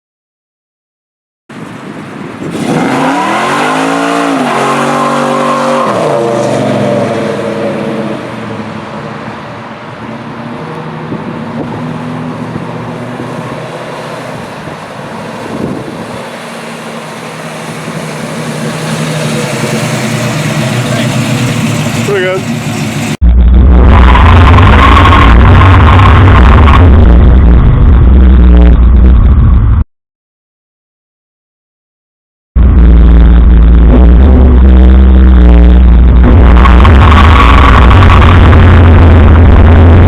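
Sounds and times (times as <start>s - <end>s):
car engine revving hard: 2.5s - 8.6s, 15.5s - 28.8s, 32.8s - 40.0s
spinning tyres hissing: 13.2s - 23.2s.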